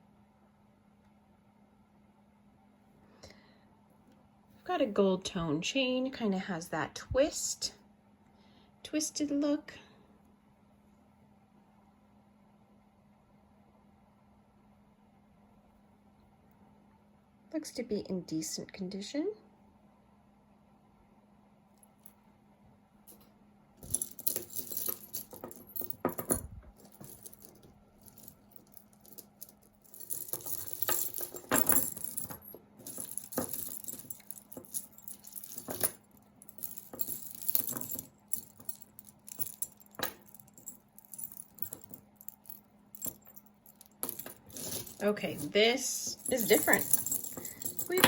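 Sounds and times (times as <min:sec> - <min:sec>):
metal jewelry jangling and clinking: 0:23.1 - 0:48.0.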